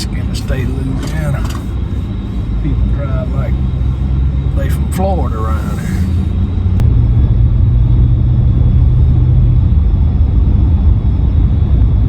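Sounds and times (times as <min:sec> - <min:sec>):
vehicle engine and road rumble: 0:00.0 - 0:12.0.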